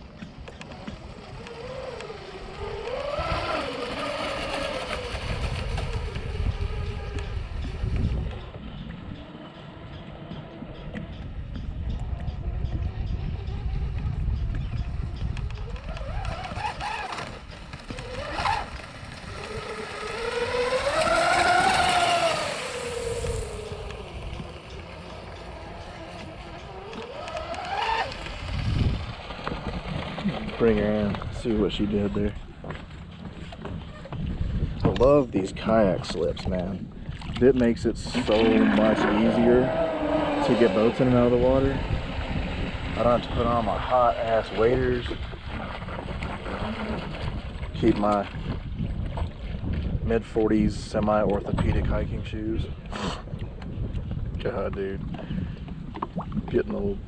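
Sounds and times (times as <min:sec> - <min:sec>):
low rumble of wind: 0:00.0 - 0:57.0
electric motors whining: 0:00.4 - 0:31.1, 0:37.9 - 0:45.4.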